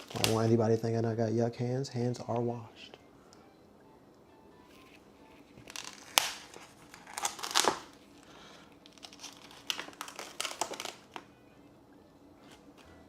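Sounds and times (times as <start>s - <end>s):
packaging crinkling and rustling: 0.0s - 1.0s, 5.4s - 11.3s.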